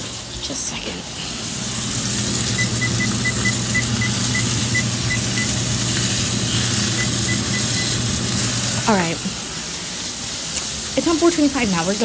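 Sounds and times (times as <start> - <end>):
steady hiss and hum: 0.0 - 12.0
oven control panel beeps: 2.3 - 8.5.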